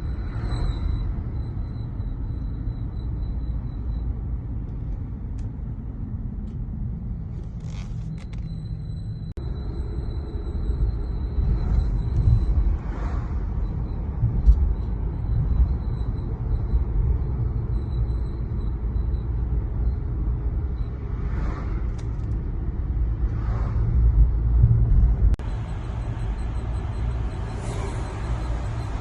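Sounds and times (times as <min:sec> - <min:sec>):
road and drivetrain rumble: 0:00.0 - 0:29.0
high-pitched brake whistle: 0:25.5 - 0:29.0.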